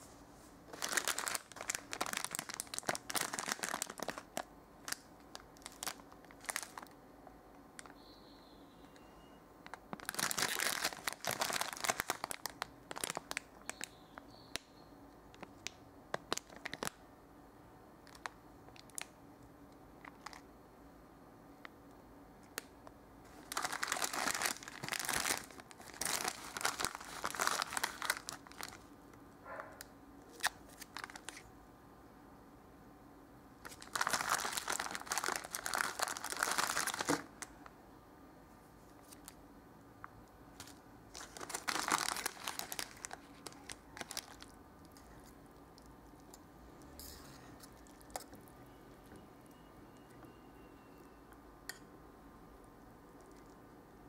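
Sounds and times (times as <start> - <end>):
plastic wrapper crinkling and tearing: 0.7 - 7.0, 9.7 - 14.0, 15.4 - 17.0, 18.0 - 19.1, 20.0 - 20.4, 23.3 - 28.9, 30.3 - 31.5, 33.6 - 37.5, 39.0 - 39.4, 40.6 - 46.4, 47.0 - 48.4.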